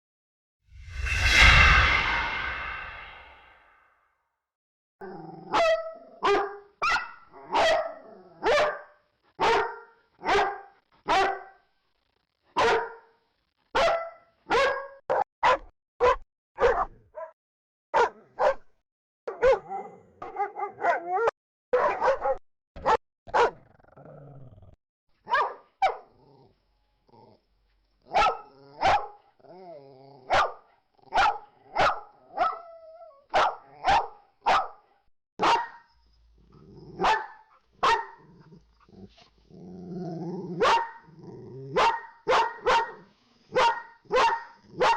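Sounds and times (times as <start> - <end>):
dog barking: 5.5 - 11.6, 12.6 - 13.1, 13.8 - 17.3, 18.0 - 18.6, 19.3 - 23.6, 25.3 - 26.1, 28.1 - 29.2, 30.3 - 32.7, 33.3 - 35.9, 37.0 - 38.4, 40.6 - 41.1, 41.7 - 44.9
dog growling: 23.6 - 24.8, 27.1 - 27.4, 29.4 - 30.3, 36.5 - 37.1, 38.2 - 41.8.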